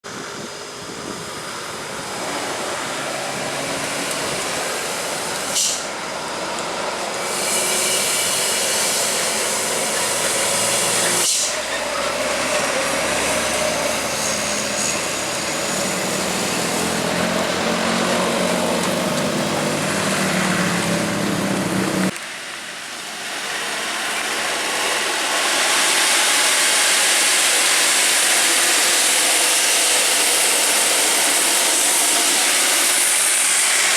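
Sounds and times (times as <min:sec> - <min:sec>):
dump truck engines under load: 0:00.1 - 0:33.9
steady hiss: 0:22.0 - 0:33.9.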